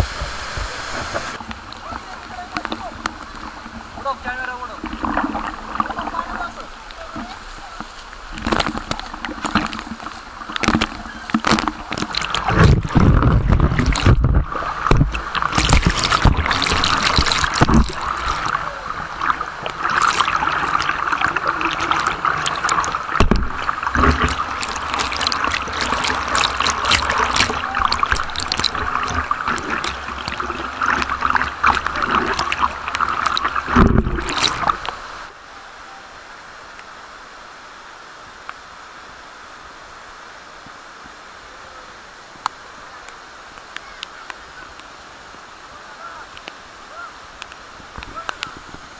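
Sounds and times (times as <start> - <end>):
steady hiss: 0.0 - 33.7
water rushing and splashing: 0.0 - 48.9
knocks and low thumps: 12.5 - 16.6, 23.2 - 24.3.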